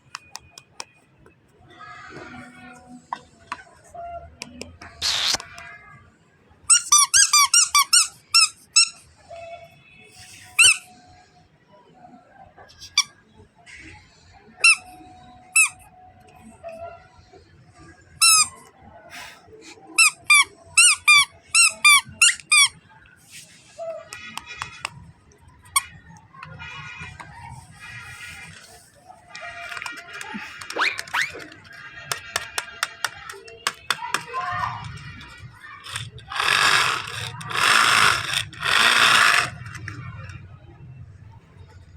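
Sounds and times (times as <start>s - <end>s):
squeaky toy squeaking: 4.4s - 5.6s, 6.7s - 9.3s, 10.5s - 11.0s, 12.7s - 13.2s, 14.6s - 16.0s, 18.2s - 18.8s, 19.9s - 22.8s, 29.3s - 40.4s.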